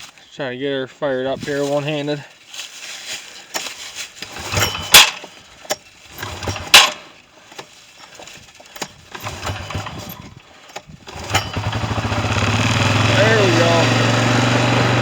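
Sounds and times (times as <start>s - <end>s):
small engine cranking: 3.5s - 15.0s
loud sharp clacks: 4.4s - 5.3s.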